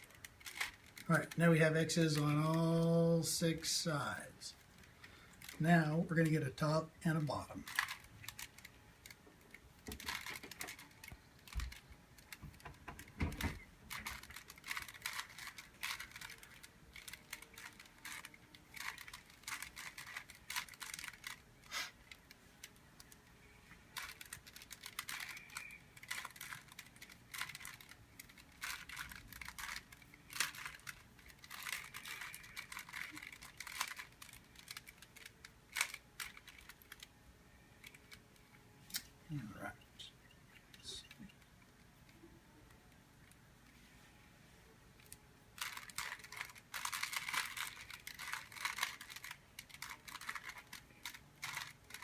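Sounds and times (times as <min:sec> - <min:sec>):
plastic puzzle cube clicking: 0:00.1 - 0:01.0, 0:07.7 - 0:09.2, 0:09.8 - 0:21.4, 0:24.0 - 0:37.1, 0:45.0 - 0:52.0.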